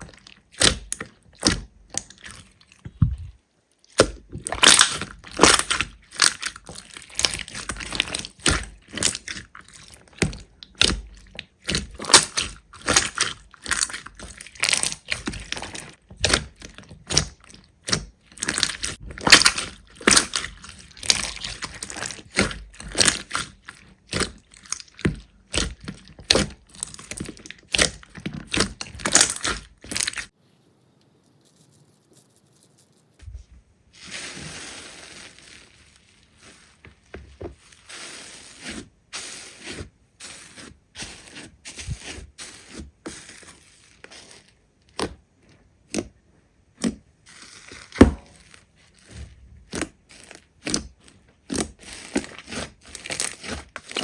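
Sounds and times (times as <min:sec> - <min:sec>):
slime crackling and popping: 0:00.0 - 0:02.6, 0:03.9 - 0:30.4, 0:46.8 - 0:54.0.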